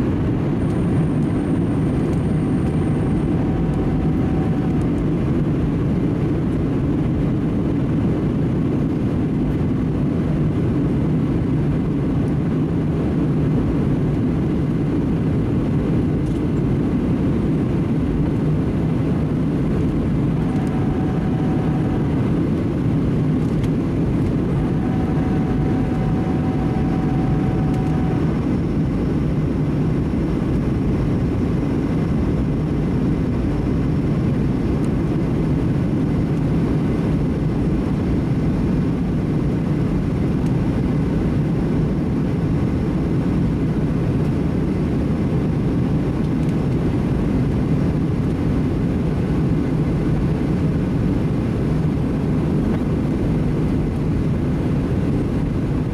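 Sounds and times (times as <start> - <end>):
jet engine drone: 0.0 - 55.9.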